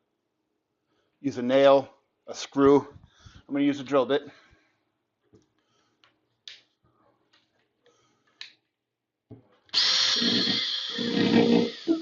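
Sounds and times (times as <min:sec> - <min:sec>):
cordless drill whining: 0:09.7 - 0:12.0.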